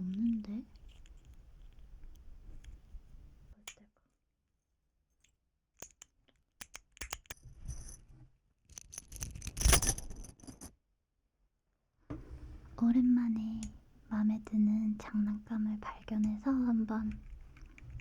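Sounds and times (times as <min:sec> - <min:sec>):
fidget toy keys clicking: 0:05.8 - 0:07.4.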